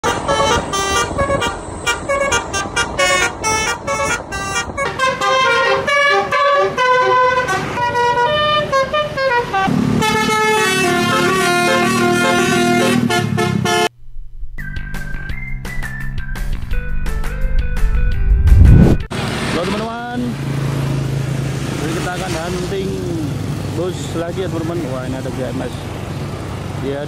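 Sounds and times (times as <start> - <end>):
musical bus horns playing tunes: 0.0 - 14.0.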